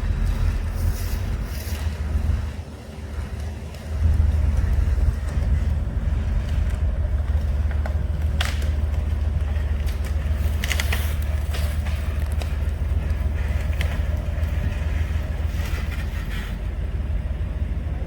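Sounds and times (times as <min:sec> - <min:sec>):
vehicle engine idling low: 0:00.0 - 0:18.0
short clicks and crackles: 0:07.4 - 0:15.8.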